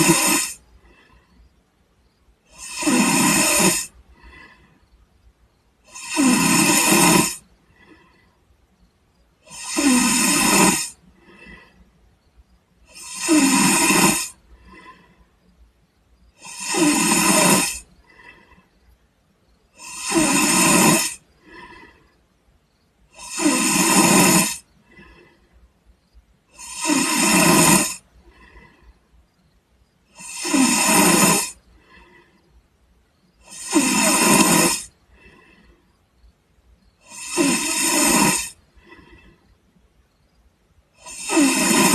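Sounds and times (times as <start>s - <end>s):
person snoring: 0.0s - 1.2s, 2.5s - 4.7s, 5.8s - 8.2s, 9.4s - 11.8s, 12.8s - 15.2s, 16.4s - 18.7s, 19.7s - 22.1s, 23.1s - 25.5s, 26.5s - 28.9s, 30.1s - 32.4s, 33.4s - 35.8s, 37.0s - 39.4s, 41.0s - 41.9s
faint breath: 0.0s - 6.0s, 7.2s - 10.1s, 10.8s - 13.1s, 14.2s - 16.6s, 17.6s - 20.3s, 21.0s - 23.6s, 24.5s - 26.6s, 27.9s - 30.2s, 31.4s - 37.7s, 38.5s - 41.6s.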